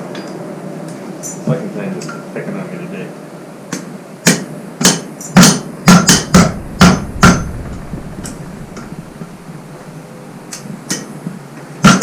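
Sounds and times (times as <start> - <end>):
hammer striking metal: 4.9 - 9.2.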